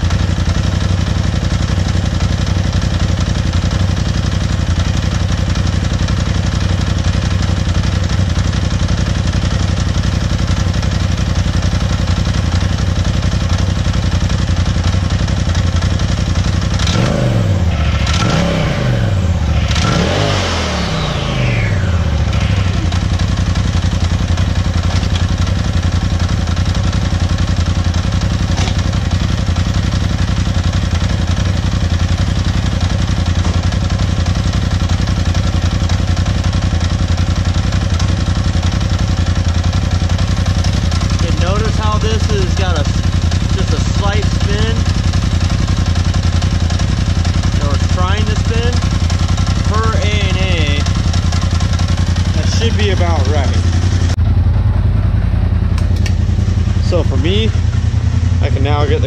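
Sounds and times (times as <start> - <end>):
engine idling and revving: 0.0 - 59.0.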